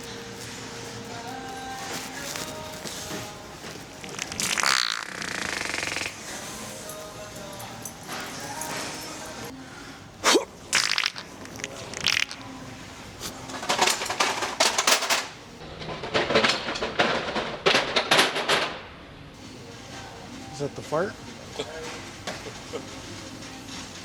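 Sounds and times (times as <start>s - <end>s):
wet fart sound effects: 4.1s - 6.4s, 10.2s - 12.5s.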